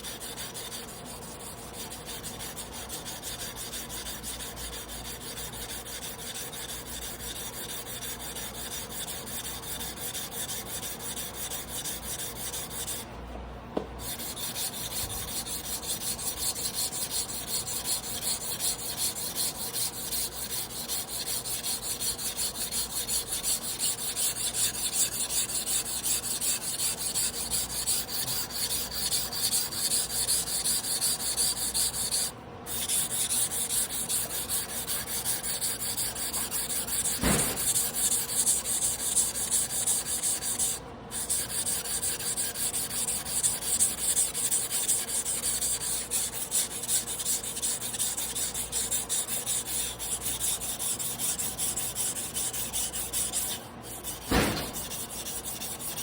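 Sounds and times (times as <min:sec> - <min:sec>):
knife scraping on whetstone: 0:14.0 - 0:56.0.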